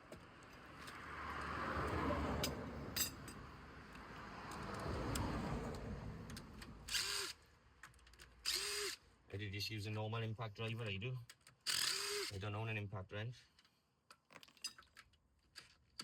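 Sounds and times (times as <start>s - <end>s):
metal clinking and scraping: 3.0s - 3.4s
impact driver whirring: 11.7s - 12.3s.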